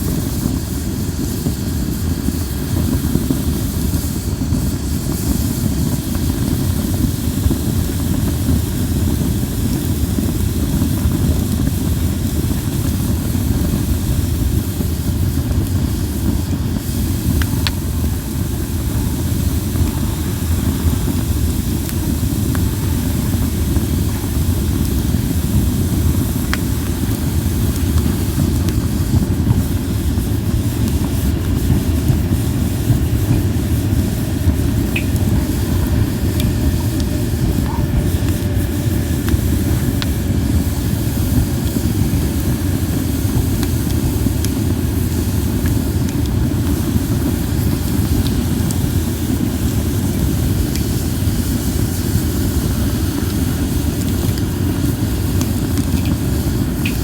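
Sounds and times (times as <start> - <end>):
campfire flames rumbling: 0.0 - 57.0
faint fire pop: 34.6 - 38.6, 55.4 - 57.0.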